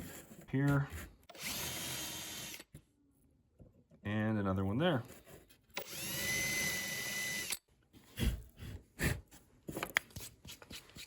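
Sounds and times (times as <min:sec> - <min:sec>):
power drill drilling: 0:01.3 - 0:02.6, 0:05.8 - 0:07.6.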